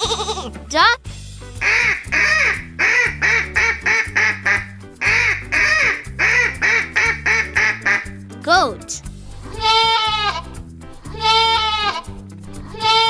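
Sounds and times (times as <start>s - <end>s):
children's backing music: 0.0s - 13.0s
duck quacking: 1.6s - 8.1s.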